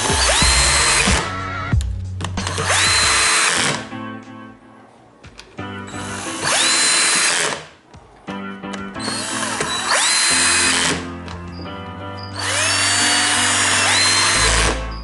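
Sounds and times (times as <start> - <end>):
cordless drill driving screws: 0.0 - 1.2, 2.4 - 3.8, 6.0 - 7.7, 9.0 - 11.0, 12.4 - 14.8.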